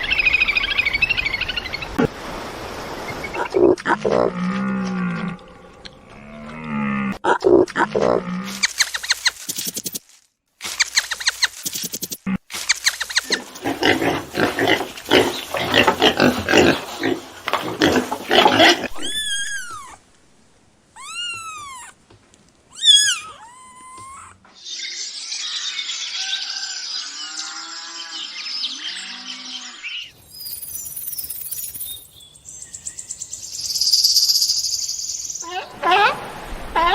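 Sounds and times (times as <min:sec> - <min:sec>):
high rising and falling calls: 0:22.8 - 0:36.2.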